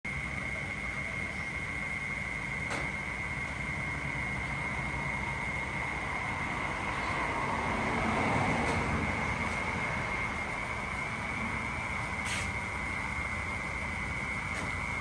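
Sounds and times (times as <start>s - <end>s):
vehicle engine rumble: 0.1s - 15.0s.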